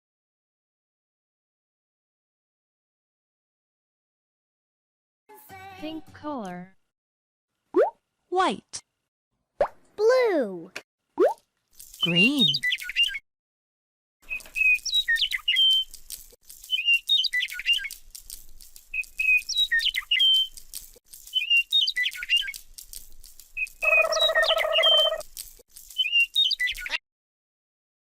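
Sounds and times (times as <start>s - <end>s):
electronic bird chirping: 23.6s - 25.2s.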